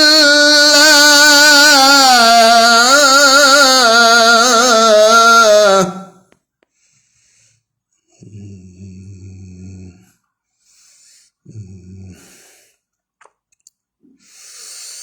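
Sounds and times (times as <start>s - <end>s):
man humming low tones: 0.0s - 6.1s
hiss: 14.2s - 15.0s.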